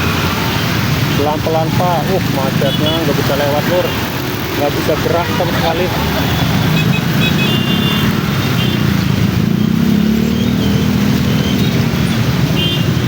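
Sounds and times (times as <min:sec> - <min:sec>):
road traffic rumble: 0:00.0 - 0:13.0
vehicle engine running close by: 0:00.0 - 0:13.0.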